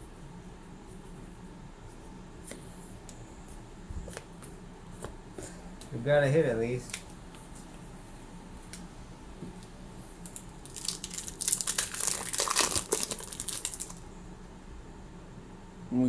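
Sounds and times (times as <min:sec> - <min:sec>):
foil wrapper crinkling and tearing: 0:10.2 - 0:14.0.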